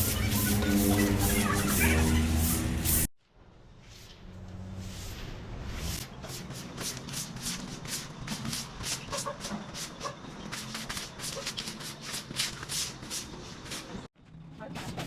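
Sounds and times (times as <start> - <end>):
broom sweeping leaves: 0.0 - 3.1, 3.8 - 14.1.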